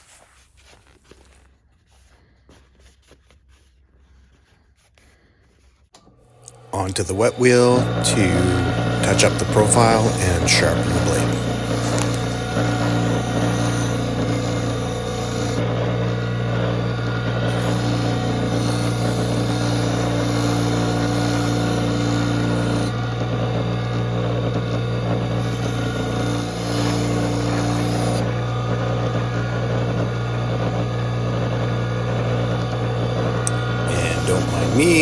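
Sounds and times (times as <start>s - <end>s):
sharpening wheel motor hum: 6.0s - 35.0s.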